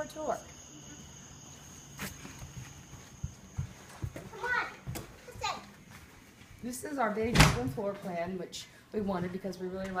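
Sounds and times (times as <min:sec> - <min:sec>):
crickets chirping faintly: 0:00.0 - 0:06.3
soft footsteps: 0:01.4 - 0:08.3.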